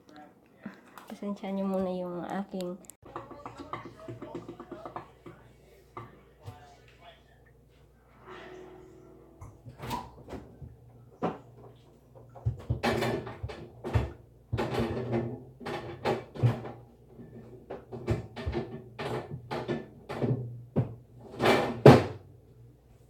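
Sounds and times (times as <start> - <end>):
containers knocking and clattering: 3.0 - 6.6, 10.2 - 22.2.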